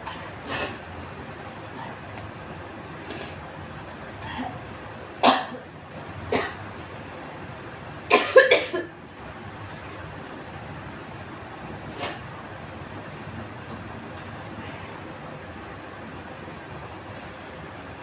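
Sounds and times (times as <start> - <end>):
woman coughing: 5.2 - 5.6, 6.3 - 6.6, 8.1 - 8.9.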